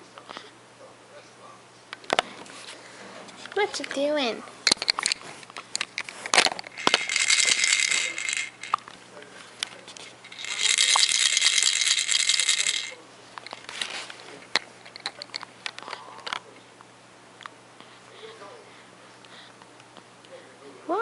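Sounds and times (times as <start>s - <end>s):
rattle shaken: 4.6s - 9.0s, 9.6s - 16.4s.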